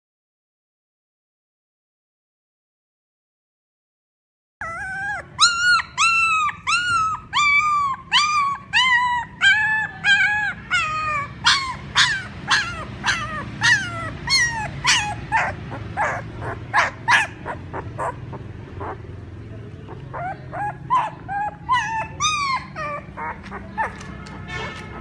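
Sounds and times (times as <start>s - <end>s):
puppy whining and yelping: 4.6s - 24.6s.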